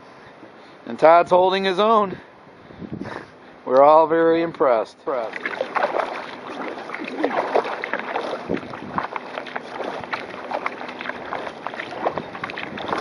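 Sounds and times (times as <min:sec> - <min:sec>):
wind on microphone: 0:02.6 - 0:03.3, 0:05.3 - 0:13.0
water splashing against hull: 0:05.1 - 0:13.0.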